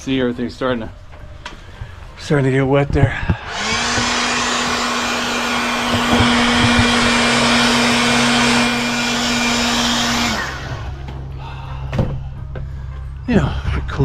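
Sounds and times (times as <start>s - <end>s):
small electric motor humming: 3.4s - 11.3s.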